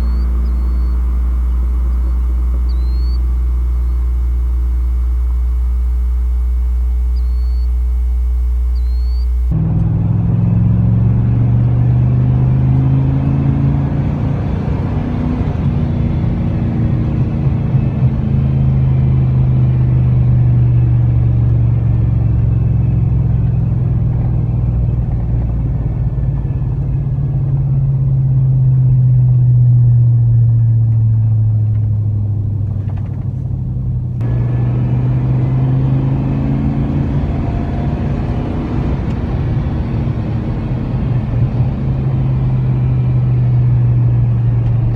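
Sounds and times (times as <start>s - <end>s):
low exhaust drone inside cab: 0.0s - 44.9s.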